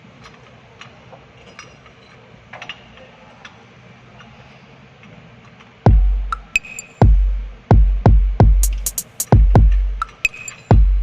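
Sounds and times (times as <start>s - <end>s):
booming bass drum: 5.9s - 11.0s
electronic music: 5.9s - 11.0s.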